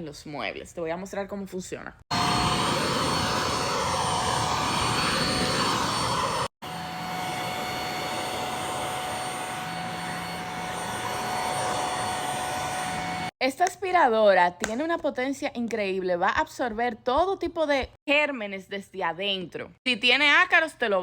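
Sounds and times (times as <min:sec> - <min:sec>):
handheld vacuum running: 0:02.1 - 0:13.3.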